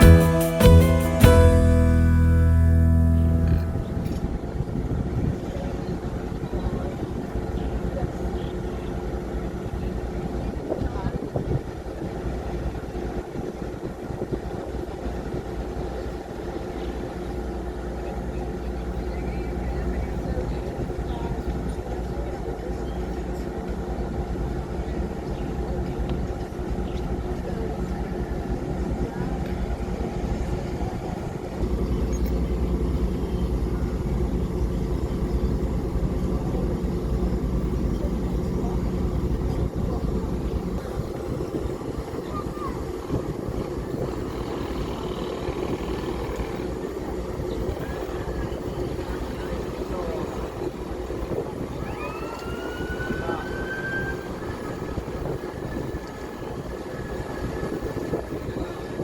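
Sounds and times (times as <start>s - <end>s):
thin high tone: 0.0s - 4.8s
vehicle rumble: 0.0s - 8.3s
engine running rough drone: 1.6s - 10.6s, 14.7s - 59.0s.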